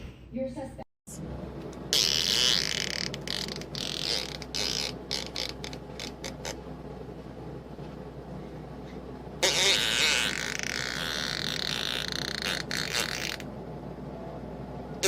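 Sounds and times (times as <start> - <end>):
fart with popping clicks: 1.9 - 6.6, 9.4 - 13.5.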